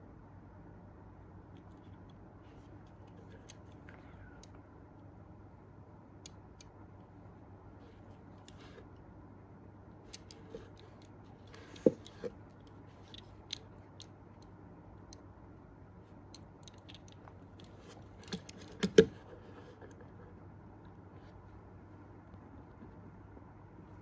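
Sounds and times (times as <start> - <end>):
toy car and packaging clicking: 10.1 - 14.2, 16.3 - 19.3.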